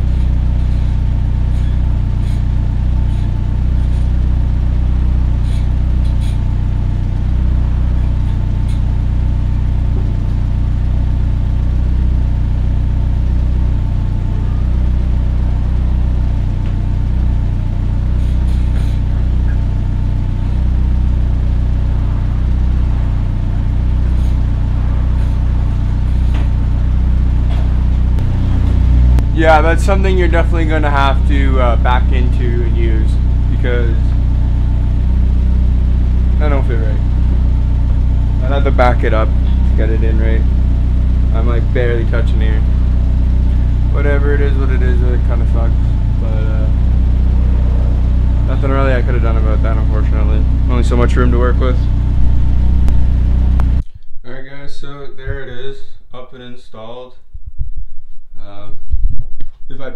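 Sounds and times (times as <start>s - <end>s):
car engine running at low speed: 0.0s - 54.0s.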